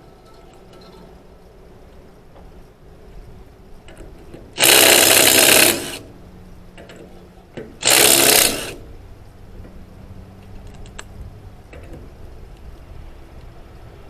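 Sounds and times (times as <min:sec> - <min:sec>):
impact driver hammering lug nuts: 0:07.6 - 0:08.8.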